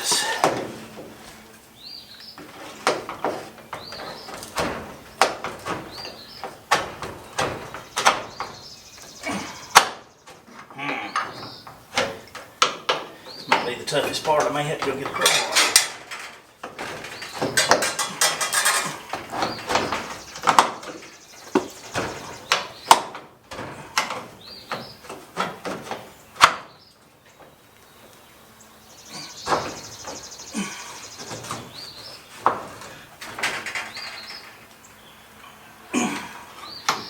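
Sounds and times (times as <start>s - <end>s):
metal clanking and scraping: 13.6s - 20.2s, 33.2s - 34.7s.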